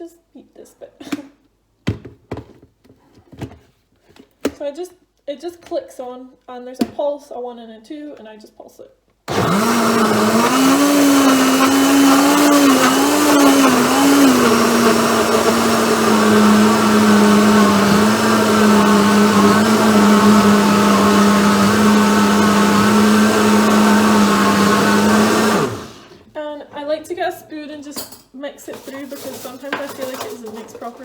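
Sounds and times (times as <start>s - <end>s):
blender running: 9.3s - 26.2s.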